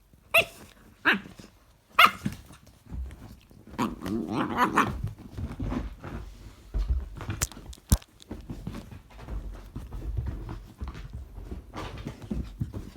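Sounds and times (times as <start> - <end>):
puppy barking: 0.3 - 1.3, 2.0 - 2.5.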